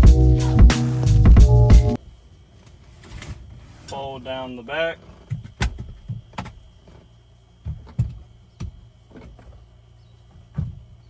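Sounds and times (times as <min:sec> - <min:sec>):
seat clicks and knocks: 0:05.0 - 0:09.7, 0:10.3 - 0:11.0.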